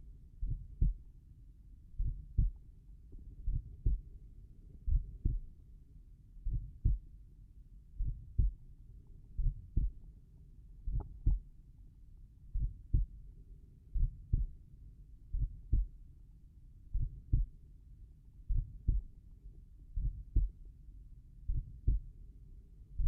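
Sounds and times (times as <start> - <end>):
slow heartbeat thumps: 0.4 - 1.0, 2.0 - 4.1, 4.8 - 5.6, 6.5 - 7.0, 8.0 - 8.6, 9.4 - 10.0, 10.9 - 11.5, 12.6 - 13.2, 14.0 - 14.6, 15.3 - 15.9, 16.9 - 17.5, 18.5 - 19.1, 20.0 - 20.6, 21.5 - 22.1.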